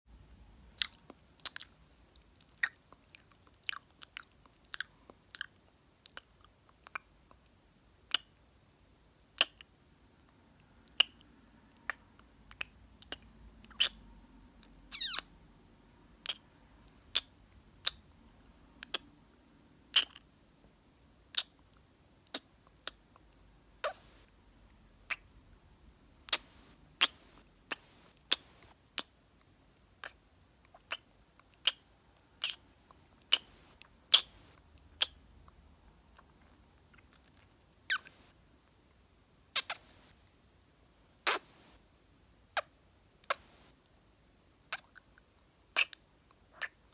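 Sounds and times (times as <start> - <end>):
kisses and lip smacks: 8.1 - 8.3, 11.9 - 14.0, 19.9 - 20.2, 21.3 - 21.6, 23.8 - 24.0, 26.3 - 29.1, 30.8 - 31.8, 33.3 - 35.2, 37.9 - 38.2, 39.6 - 40.0, 41.3 - 41.6, 44.7 - 45.0, 45.8 - 46.0.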